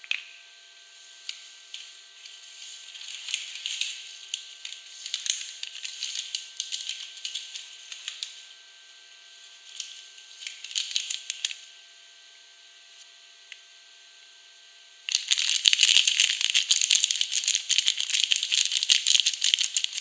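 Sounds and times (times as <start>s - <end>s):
packaging crinkling: 1.2s - 8.4s, 9.6s - 11.6s, 15.1s - 20.0s.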